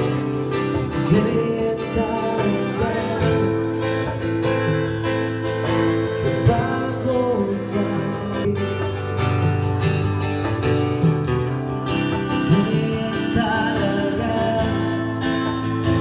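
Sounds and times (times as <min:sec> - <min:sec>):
pop song with guitar: 0:00.0 - 0:16.0.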